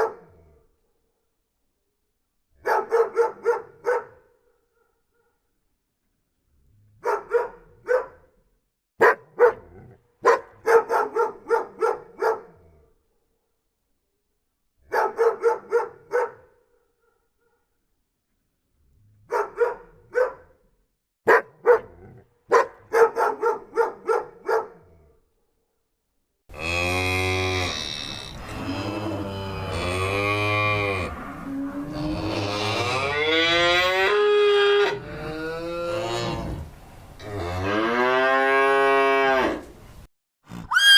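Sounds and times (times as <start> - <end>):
dog barking: 0.0 - 0.4, 2.6 - 5.4, 7.0 - 8.4, 9.0 - 12.7, 14.8 - 17.7, 19.3 - 20.6, 21.2 - 24.9
cow mooing: 26.5 - 36.6.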